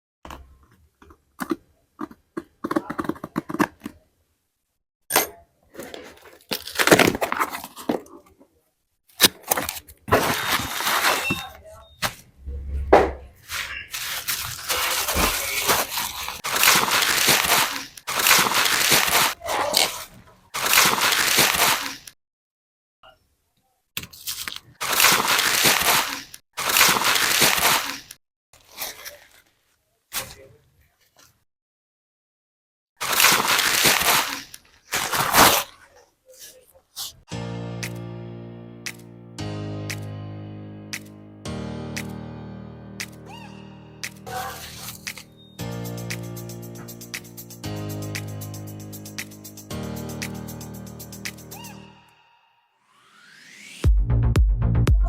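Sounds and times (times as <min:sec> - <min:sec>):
scratchy scraping: 0:12.4 - 0:20.2
dry crunching and crackling: 0:13.9 - 0:22.1, 0:24.2 - 0:29.6, 0:33.0 - 0:36.0.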